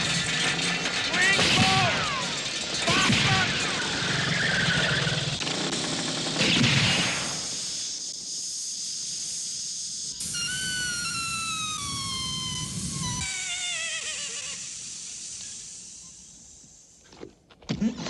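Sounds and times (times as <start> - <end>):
dynamite explosion: 0.0 - 8.0
rumble of noise: 0.0 - 8.4.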